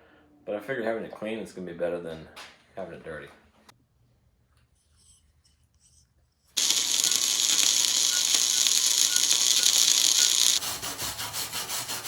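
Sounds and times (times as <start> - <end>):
welder crackling sizzle: 6.6 - 10.6.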